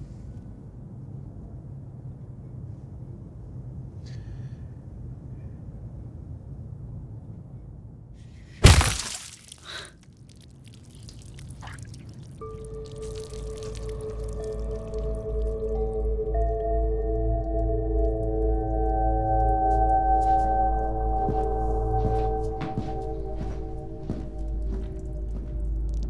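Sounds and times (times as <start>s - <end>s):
loud wet splatter: 8.6s - 14.9s
low steady hum: 10.6s - 26.0s.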